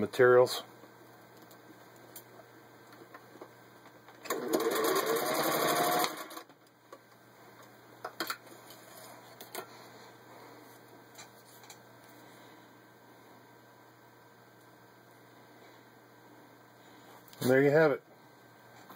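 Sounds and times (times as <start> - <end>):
sewing machine stitching rattle: 4.3 - 6.4
sewing machine motor whine: 4.3 - 6.5.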